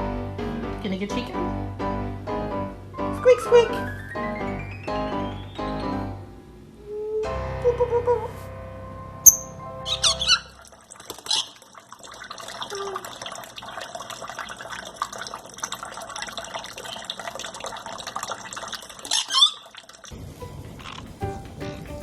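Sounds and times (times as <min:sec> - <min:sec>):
high bird chirps: 0:04.9 - 0:06.0, 0:09.3 - 0:10.5
water running and splashing: 0:10.3 - 0:22.0.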